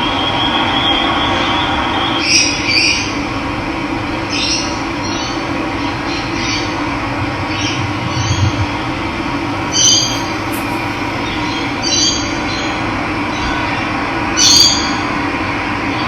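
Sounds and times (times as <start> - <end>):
running water: 9.6 - 11.9
bird calling: 9.6 - 12.2.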